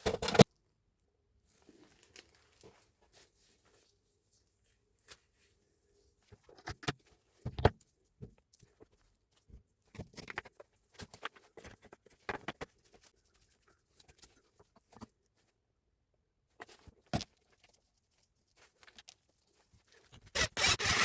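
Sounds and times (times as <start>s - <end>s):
tool parts clicking and knocking: 20.3s - 21.0s.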